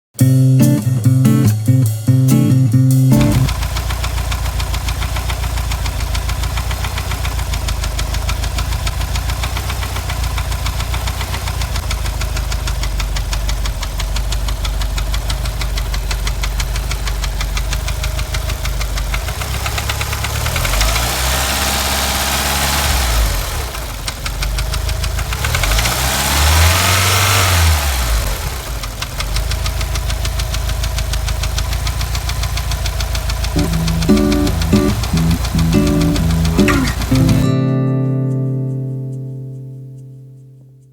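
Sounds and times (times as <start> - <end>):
car engine idling: 3.3 - 19.2, 30.1 - 37.5
engine tapping tick: 3.3 - 21.3, 28.8 - 37.5
engine revving: 25.4 - 28.2.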